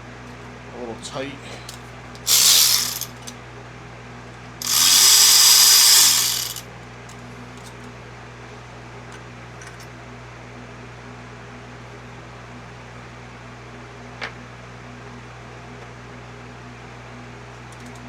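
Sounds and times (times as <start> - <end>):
cordless power tool spinning: 2.2 - 3.3, 4.6 - 6.6.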